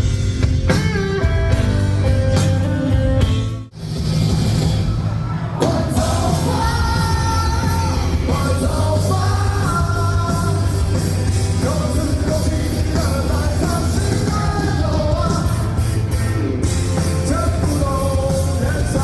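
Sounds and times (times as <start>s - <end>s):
live rock band playing: 0.0s - 19.0s
person singing long held lines: 5.6s - 19.0s.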